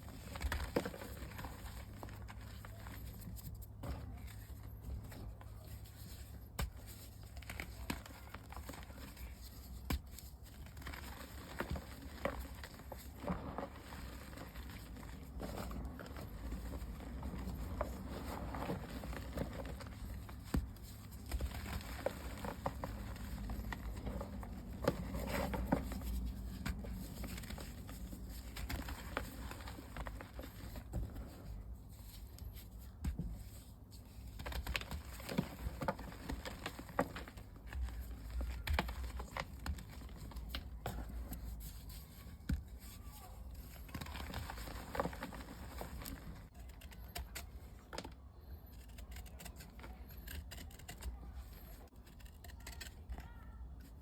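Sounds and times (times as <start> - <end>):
chalk balls crumbling and crunching: 0.0 - 54.0.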